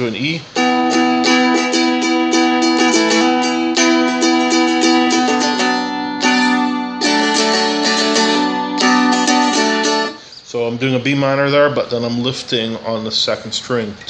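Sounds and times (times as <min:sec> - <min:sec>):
dulcimer strummed: 0:00.6 - 0:10.2.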